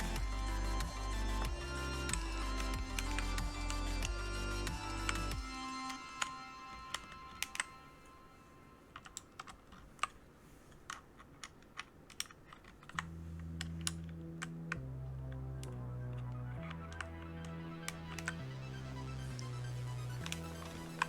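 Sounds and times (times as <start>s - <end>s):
mechanical keyboard clacking: 0.0s - 7.8s, 8.9s - 10.2s, 10.8s - 14.8s
background music with low bass: 0.0s - 8.6s, 13.0s - 21.0s.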